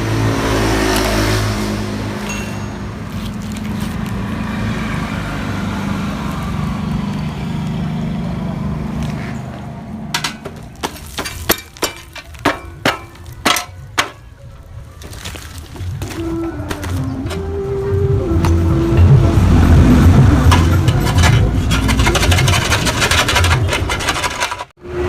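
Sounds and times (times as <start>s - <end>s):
two-stroke engine running: 16.0s - 24.7s.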